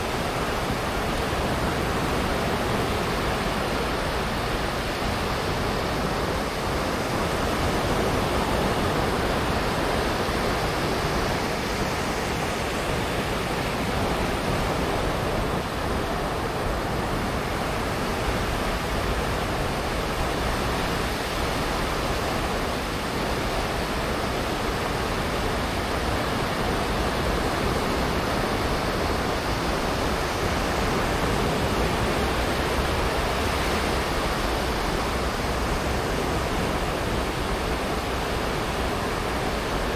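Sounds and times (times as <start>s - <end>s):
waves washing onto sandy beach: 0.0s - 39.9s.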